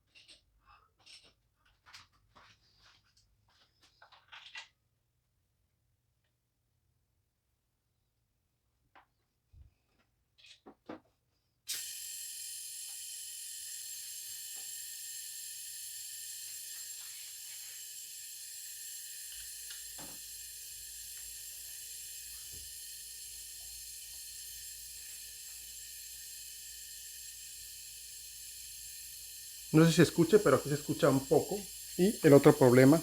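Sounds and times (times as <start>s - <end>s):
compressed air hissing: 11.7s - 33.0s.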